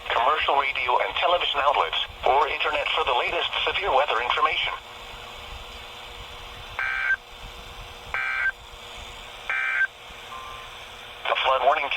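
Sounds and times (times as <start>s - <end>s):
screeching digital data tones: 6.8s - 7.2s.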